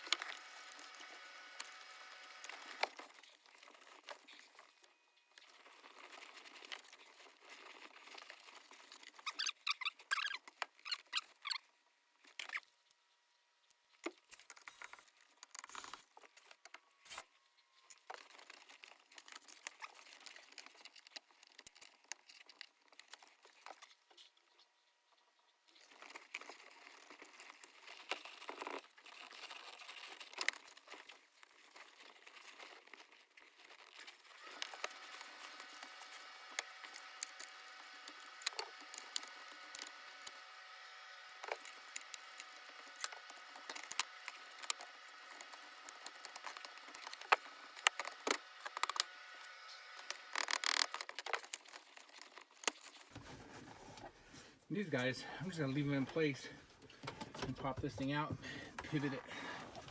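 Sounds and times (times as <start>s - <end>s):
upholstery rustling and crinkling: 50.0s - 54.6s.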